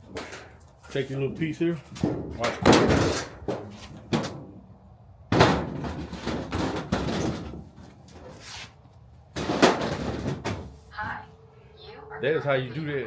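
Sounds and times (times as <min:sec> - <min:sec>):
sheet metal banging and rattling: 0:01.9 - 0:04.6, 0:05.3 - 0:08.3, 0:09.3 - 0:10.8.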